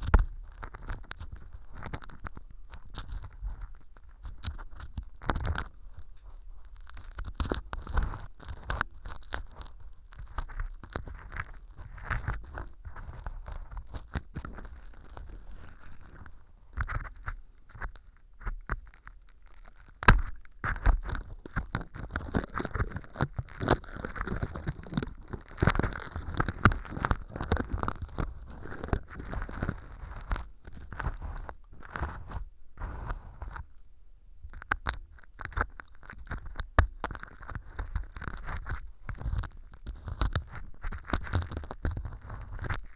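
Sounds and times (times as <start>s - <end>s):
earpick scraping crunchy powder: 0.2s - 33.8s.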